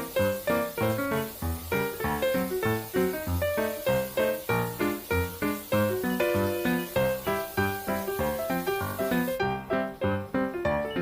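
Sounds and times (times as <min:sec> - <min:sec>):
plucked keyboard-like melody: 0:09.0 - 0:11.0.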